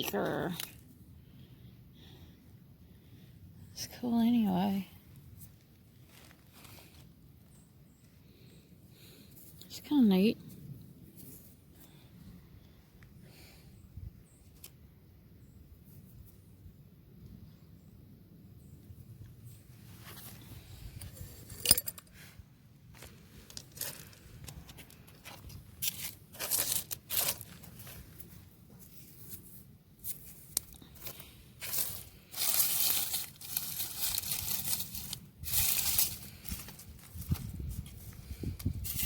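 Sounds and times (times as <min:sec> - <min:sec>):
hands digging through soil: 0:22.2 - 0:39.0.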